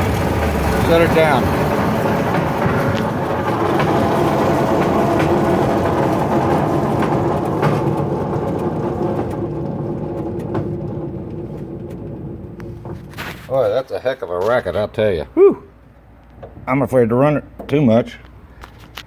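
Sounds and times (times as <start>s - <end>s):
engine running: 0.0s - 13.5s
sharp clicks from drivetrain: 0.0s - 13.5s.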